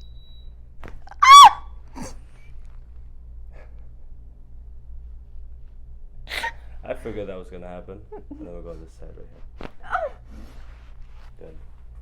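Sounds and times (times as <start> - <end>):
person yelping: 1.1 - 2.1.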